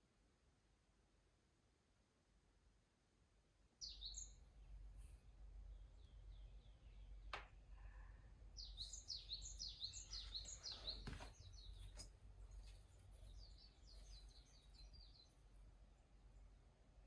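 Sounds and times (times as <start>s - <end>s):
songbird chirping: 3.6s - 17.0s
outdoor ambience rumble: 4.2s - 17.0s.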